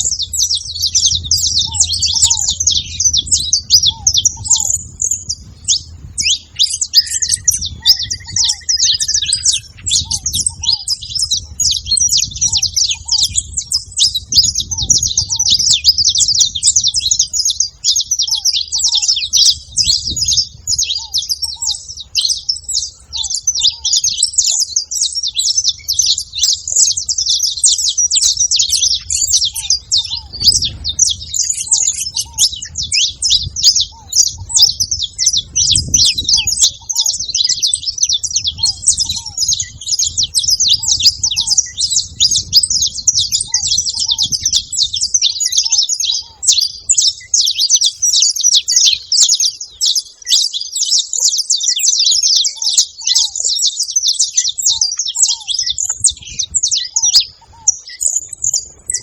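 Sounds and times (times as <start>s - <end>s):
finches chirping: 0.0s - 59.0s
whistled bird note: 0.2s - 11.2s.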